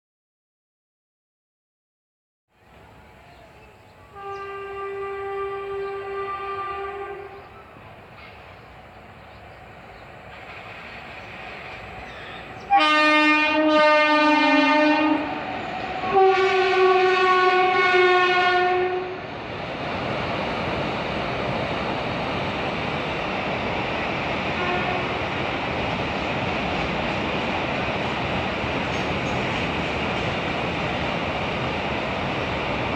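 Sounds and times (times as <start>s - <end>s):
freight train rumble and wheel clatter: 2.6s - 32.9s
locomotive air horn blasts: 4.1s - 7.4s, 12.6s - 19.2s, 24.6s - 25.3s.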